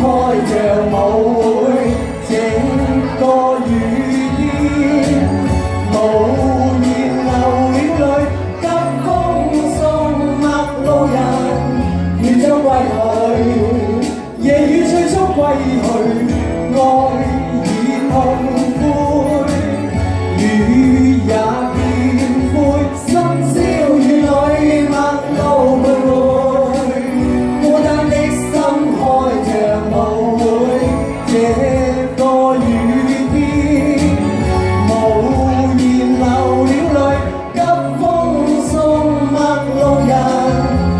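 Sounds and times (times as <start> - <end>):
person singing over a beat: 0.0 - 40.9.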